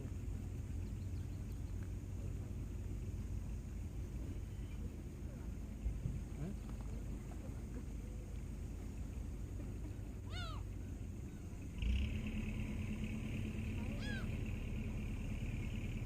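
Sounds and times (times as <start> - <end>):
steady low rumble: 0.0 - 16.0
short animal cries: 10.3 - 10.6, 13.9 - 14.3.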